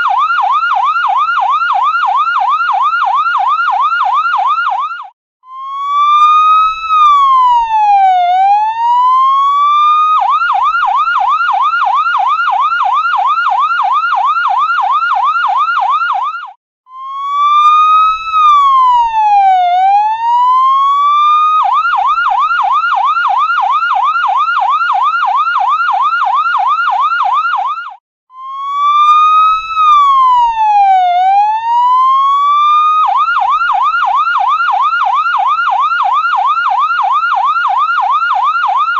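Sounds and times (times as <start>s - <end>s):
ambulance siren wailing and yelping: 0.0s - 38.9s.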